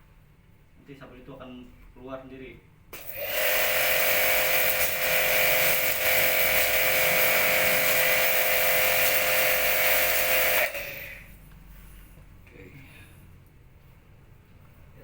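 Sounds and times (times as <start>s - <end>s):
pressure washer motor whine: 3.0s - 11.3s
water jet hissing: 3.0s - 11.3s.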